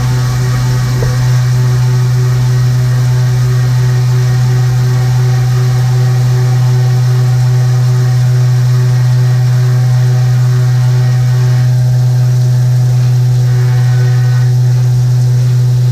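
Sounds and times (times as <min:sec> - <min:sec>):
faint steady tones: 0:00.0 - 0:09.0
loud steady low hum: 0:00.0 - 0:15.9.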